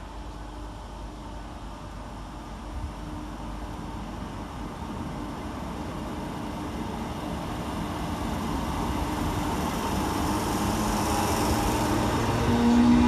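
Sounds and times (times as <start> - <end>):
electric train pulling out: 5.0 - 13.0.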